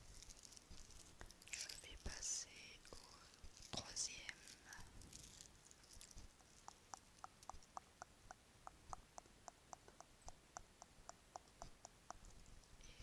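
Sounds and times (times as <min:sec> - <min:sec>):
bracelet tapping clicks: 0:06.3 - 0:12.3.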